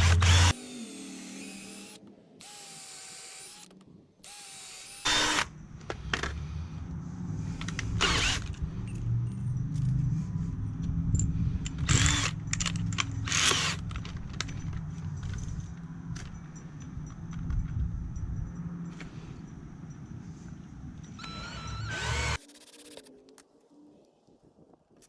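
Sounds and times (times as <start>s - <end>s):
power drill driving screws: 0.0s - 5.5s, 8.0s - 8.6s, 11.8s - 14.1s, 21.2s - 23.1s.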